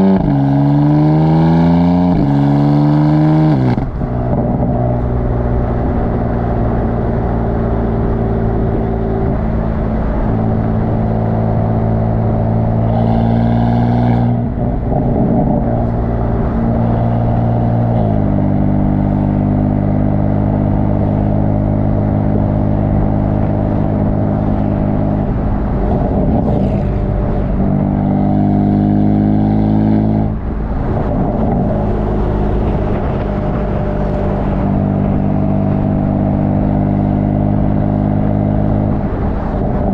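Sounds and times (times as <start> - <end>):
car exhaust revving: 0.0 - 39.9.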